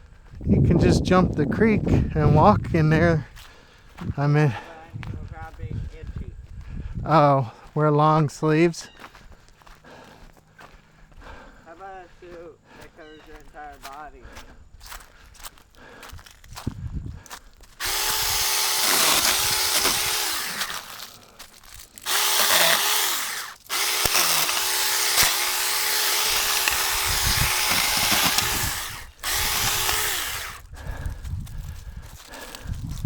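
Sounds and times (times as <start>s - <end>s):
mini chainsaw cutting wood: 17.6s - 33.0s.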